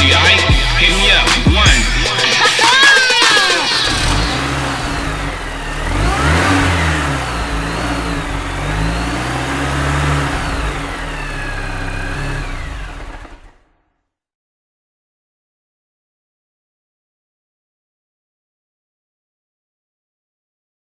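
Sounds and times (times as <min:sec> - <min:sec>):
car engine revving: 0:00.0 - 0:13.7.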